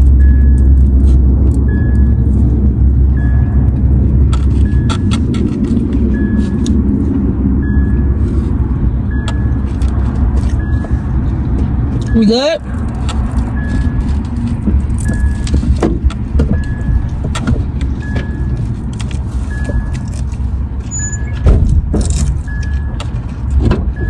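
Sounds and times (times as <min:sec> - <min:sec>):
low rumble inside car: 0:00.0 - 0:24.0
car warning chime beeps: 0:00.1 - 0:15.7, 0:16.5 - 0:17.2, 0:18.0 - 0:21.5, 0:22.4 - 0:23.3
handling clicks and rattles: 0:09.2 - 0:24.0.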